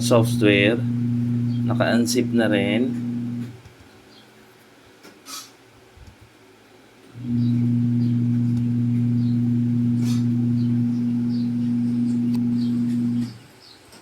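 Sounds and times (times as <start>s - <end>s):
loud steady low hum: 0.0s - 3.6s, 7.2s - 13.4s.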